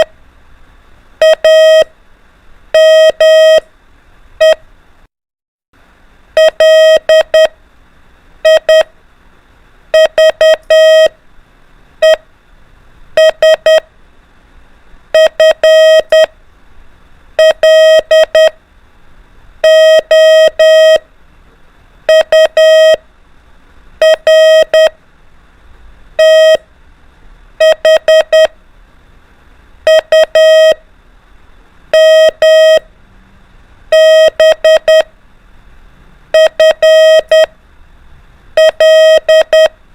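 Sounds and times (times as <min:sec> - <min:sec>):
morse code tone beeping: 0:01.2 - 0:01.9, 0:02.8 - 0:03.7, 0:04.4 - 0:04.6, 0:06.4 - 0:07.5, 0:08.4 - 0:08.9, 0:10.0 - 0:11.1, 0:12.0 - 0:12.2, 0:13.2 - 0:13.9, 0:15.2 - 0:16.3, 0:17.4 - 0:18.6, 0:19.6 - 0:21.0, 0:22.1 - 0:23.0, 0:24.0 - 0:25.0, 0:26.2 - 0:26.6, 0:27.6 - 0:28.6, 0:29.9 - 0:30.8, 0:31.9 - 0:32.9, 0:33.9 - 0:35.1, 0:36.4 - 0:37.5, 0:38.6 - 0:39.8.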